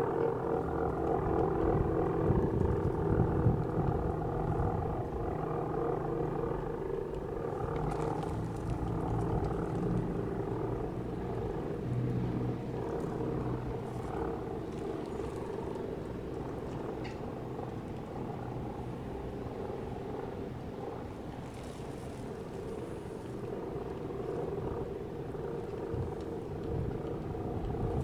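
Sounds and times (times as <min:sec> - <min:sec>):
wind buffeting microphone: 0:00.1 - 0:15.5, 0:23.6 - 0:28.0.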